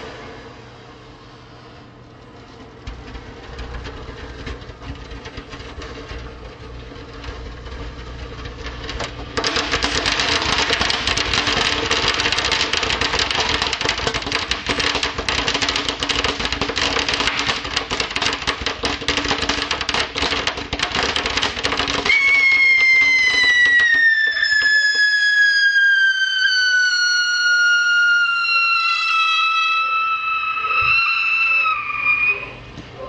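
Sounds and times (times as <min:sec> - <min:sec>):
fireworks crackling and fizzing: 0:02.7 - 0:32.7.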